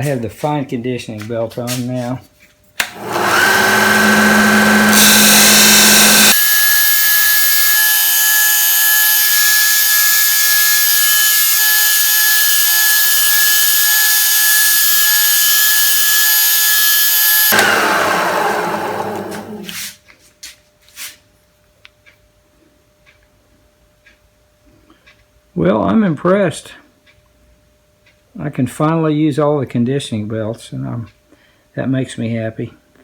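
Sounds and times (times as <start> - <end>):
belt sander motor whine: 2.8 - 19.8
sanding belt hissing on workpiece: 3.0 - 20.0.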